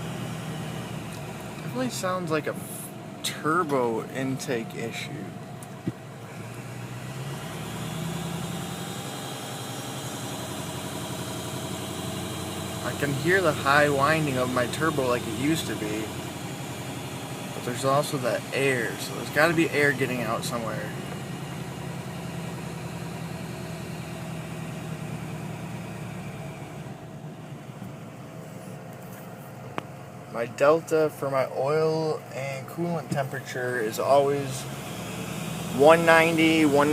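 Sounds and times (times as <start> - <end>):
turbo whine: 0.0 - 30.7, 32.4 - 36.9
diesel engine running: 0.0 - 36.9.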